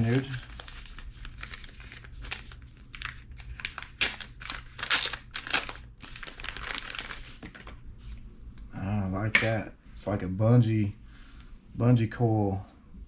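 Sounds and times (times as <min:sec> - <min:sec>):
crinkly packaging rustling: 0:00.0 - 0:07.9.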